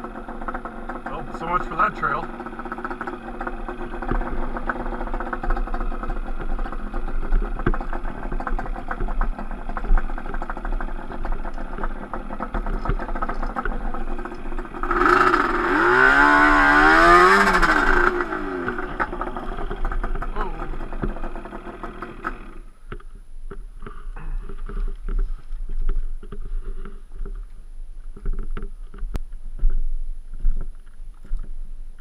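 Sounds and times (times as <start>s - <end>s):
two-stroke atv engine revving: 0.0s - 22.7s.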